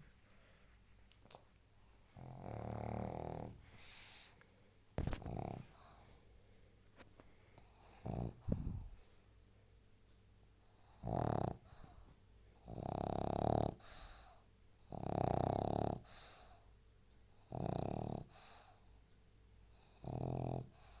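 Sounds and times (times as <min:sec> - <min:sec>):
dog snoring: 0:02.2 - 0:04.3, 0:05.0 - 0:06.0, 0:07.6 - 0:08.8, 0:10.6 - 0:12.0, 0:12.6 - 0:16.6, 0:17.4 - 0:18.8, 0:19.7 - 0:21.0.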